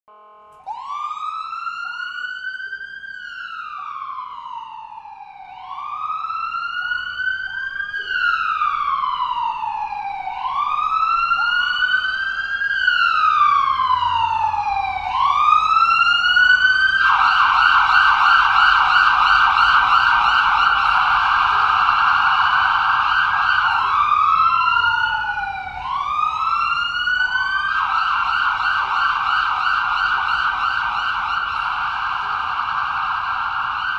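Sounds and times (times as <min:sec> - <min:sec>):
ambulance siren wail and yelp: 0:00.5 - 0:33.9.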